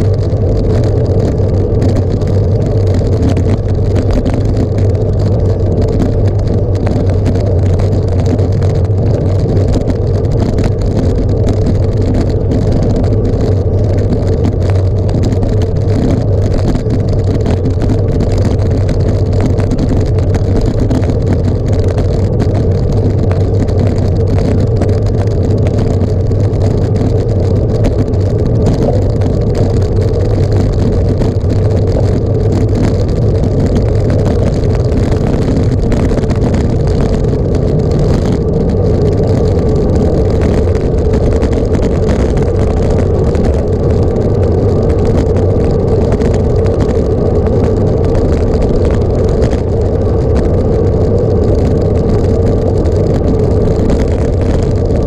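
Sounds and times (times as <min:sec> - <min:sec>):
vehicle engine droning: 0:00.0 - 0:55.0.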